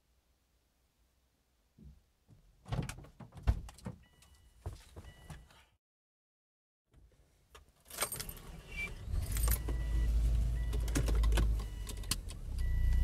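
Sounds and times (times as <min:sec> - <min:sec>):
car keys jangling: 0:07.8 - 0:09.8
car engine starting and running: 0:08.0 - 0:13.0.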